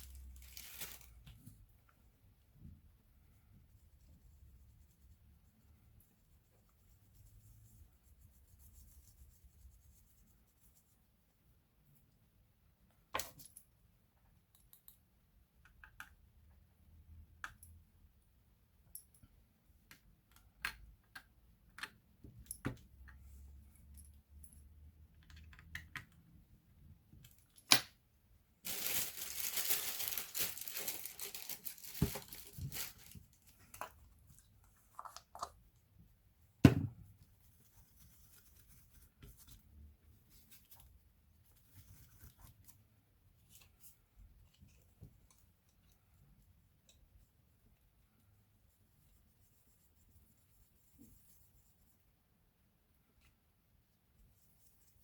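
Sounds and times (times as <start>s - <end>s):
clicks and taps of small tools: 14.4s - 16.3s, 19.8s - 23.2s, 25.2s - 26.3s.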